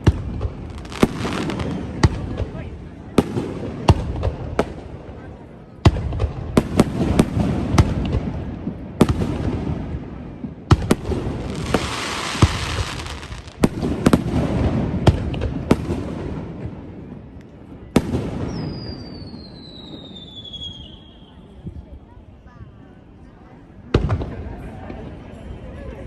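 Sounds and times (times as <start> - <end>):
fireworks booming bangs: 0.0 - 21.0, 23.9 - 24.6
fireworks crackling: 0.0 - 21.0
descending firework whistle: 18.4 - 21.8.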